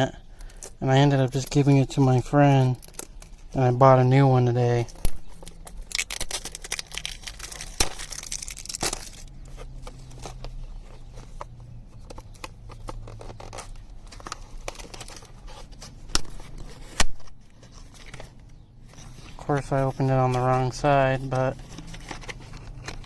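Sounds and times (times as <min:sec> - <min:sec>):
packaging crinkling: 0:00.4 - 0:03.6, 0:04.8 - 0:11.4, 0:12.0 - 0:23.0
packaging tearing: 0:02.7 - 0:03.4, 0:04.8 - 0:10.5, 0:12.2 - 0:18.4.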